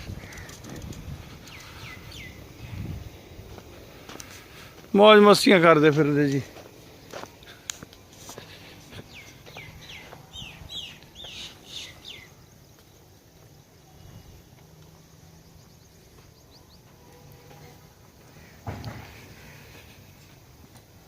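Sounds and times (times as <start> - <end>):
bird chirping: 0.0 - 3.0, 9.0 - 12.5, 15.4 - 17.1.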